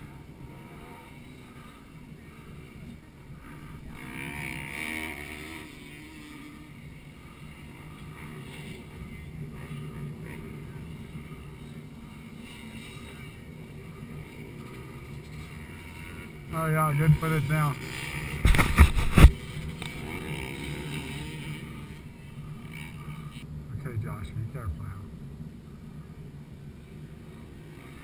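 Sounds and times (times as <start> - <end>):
dirt bike engines revving: 0.0 - 28.0.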